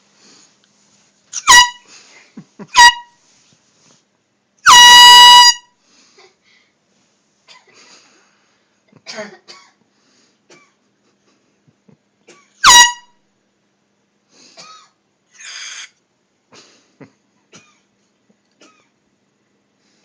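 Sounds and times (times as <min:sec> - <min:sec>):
loud air horn blast: 0:04.7 - 0:05.7.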